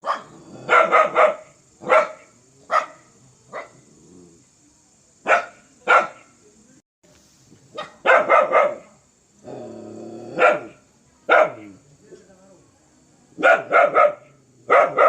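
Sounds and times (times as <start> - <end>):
dog barking fiercely: 0.0 - 3.9, 5.2 - 6.3, 7.7 - 9.0, 10.3 - 11.8, 13.4 - 15.0.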